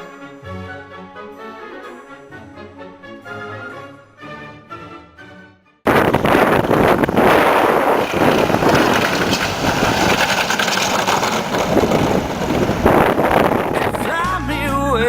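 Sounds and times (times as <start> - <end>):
strong wind buffeting microphone: 5.9 - 14.2.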